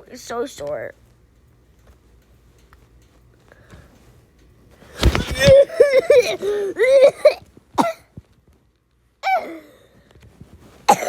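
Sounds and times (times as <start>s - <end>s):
person coughing: 5.0s - 8.1s.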